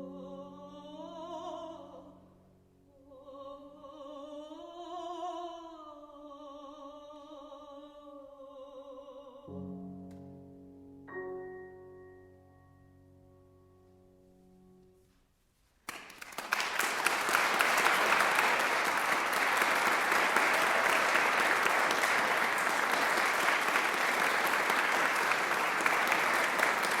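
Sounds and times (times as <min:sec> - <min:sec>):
piano chord: 0:09.6 - 0:15.0
audience applause: 0:15.9 - 0:27.0.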